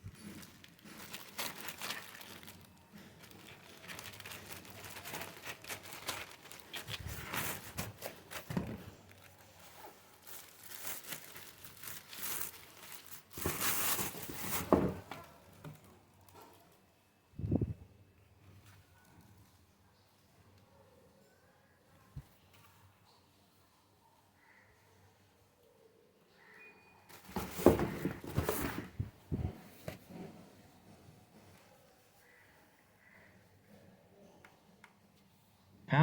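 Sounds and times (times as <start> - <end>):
packaging crinkling and tearing: 0.1 - 16.4.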